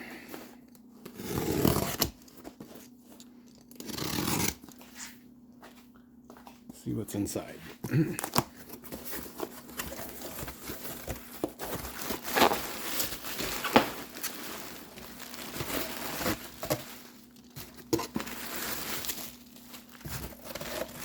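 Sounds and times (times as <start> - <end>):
faint steady hum: 0.0 - 21.0
cardboard tearing and snapping: 1.0 - 2.6, 3.6 - 4.8, 8.2 - 21.0
packing material crinkling: 7.9 - 21.0.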